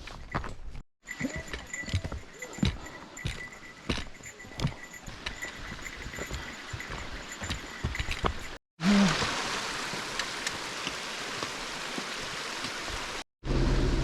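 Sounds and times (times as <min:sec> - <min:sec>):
footsteps crunching on trail: 0:00.0 - 0:08.6
mountain stream rushing: 0:04.4 - 0:13.2.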